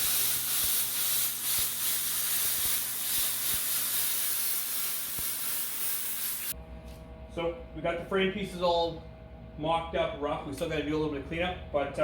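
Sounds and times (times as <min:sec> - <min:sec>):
plasma cutter jet hissing: 0:00.0 - 0:06.6.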